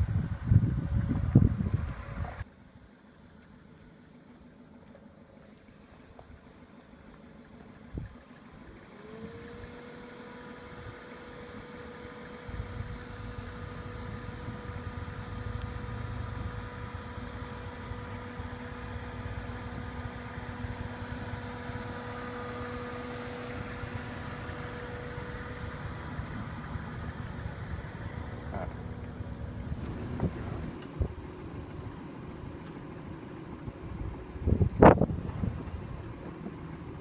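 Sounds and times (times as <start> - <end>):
heavy low rumble: 0.0 - 2.5, 12.4 - 37.0
car engine whining: 0.0 - 37.0.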